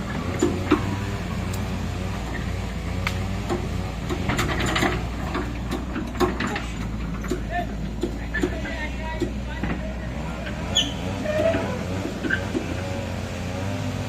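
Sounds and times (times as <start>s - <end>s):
excavator diesel engine: 0.0s - 14.0s
metallic clanks and knocks: 3.4s - 9.9s.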